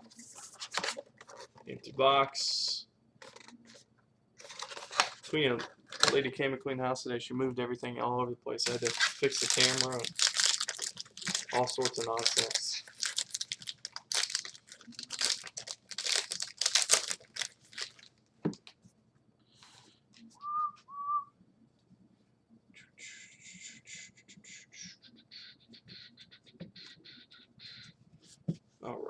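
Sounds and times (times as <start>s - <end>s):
cards rustling: 0.0s - 1.7s, 3.2s - 3.8s, 4.4s - 6.2s, 8.6s - 18.2s
wrapper crinkling and tearing: 4.4s - 5.3s, 8.6s - 18.2s
whistled notes: 20.4s - 21.3s.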